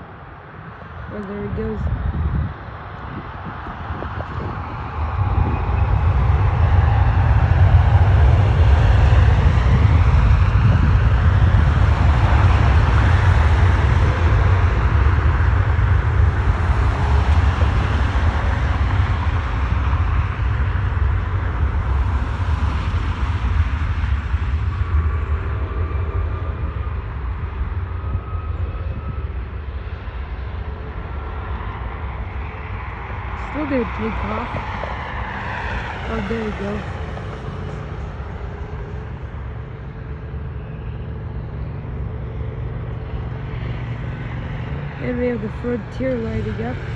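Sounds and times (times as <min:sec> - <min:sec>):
jet engines at takeoff: 0:00.0 - 0:46.9.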